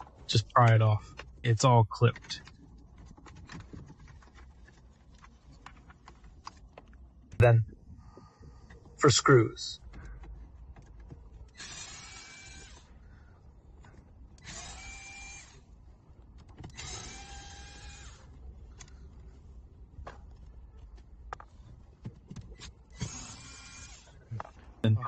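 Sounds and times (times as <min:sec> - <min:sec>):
electric screwdriver whirring: 0:11.6 - 0:12.9, 0:14.4 - 0:15.6, 0:16.7 - 0:18.3, 0:22.9 - 0:24.2.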